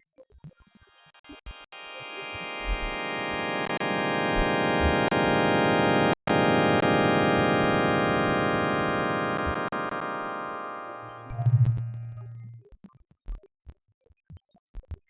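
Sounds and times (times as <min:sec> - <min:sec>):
buzzy synthesizer tone: 0:01.5 - 0:12.6.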